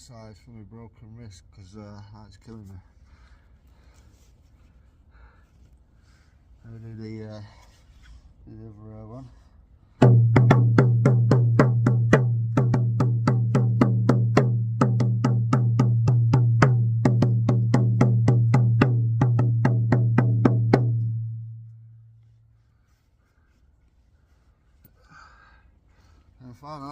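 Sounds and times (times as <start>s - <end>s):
frame drum beaten steadily: 10.0s - 21.2s.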